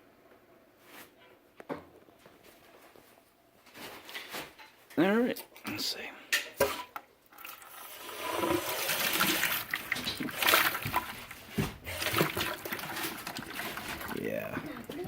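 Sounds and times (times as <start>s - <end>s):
water rushing from valve: 7.4s - 11.1s.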